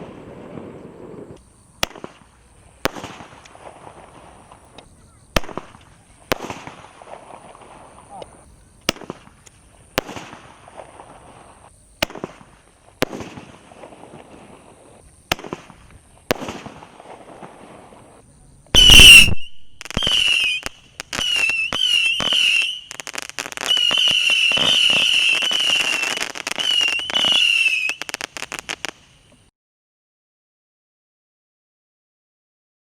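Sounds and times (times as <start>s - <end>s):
fireworks bangs: 0.0s - 29.5s
fireworks crackling: 0.0s - 29.5s
high wavering firework whistle: 16.4s - 29.4s.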